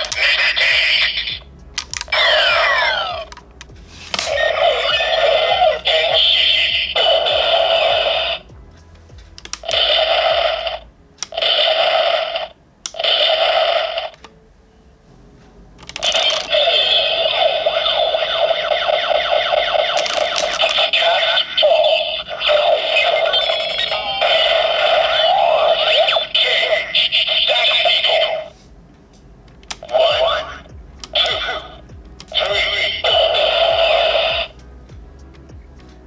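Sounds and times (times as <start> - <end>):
toy electronic sound effects: 0.0 - 3.4, 4.1 - 8.5, 9.4 - 14.2, 15.9 - 28.6, 29.7 - 34.6
toy click: 0.0 - 5.4, 9.4 - 11.8, 15.8 - 28.1, 29.5 - 34.5.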